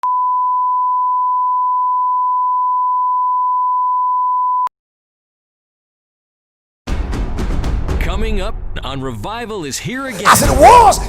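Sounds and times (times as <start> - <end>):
single-pitch test tone: 0.0 - 4.7.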